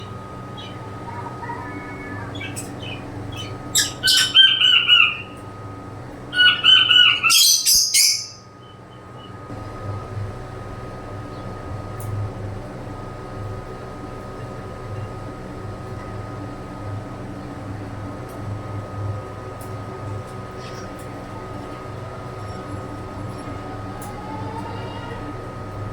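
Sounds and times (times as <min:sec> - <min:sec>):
birds chirping and squawking: 0:00.0 - 0:09.4, 0:20.4 - 0:25.6
steady mechanical hum: 0:00.0 - 0:25.9.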